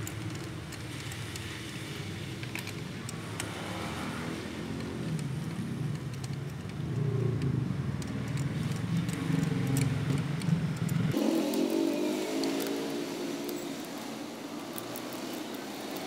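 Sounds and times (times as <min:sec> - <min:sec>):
rising engine note: 0:11.2 - 0:14.5.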